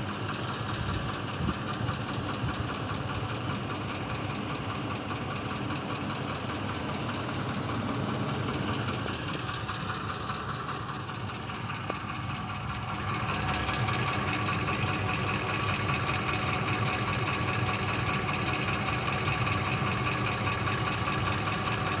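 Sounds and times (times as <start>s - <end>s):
engine running with knocking tick: 0.0s - 22.0s.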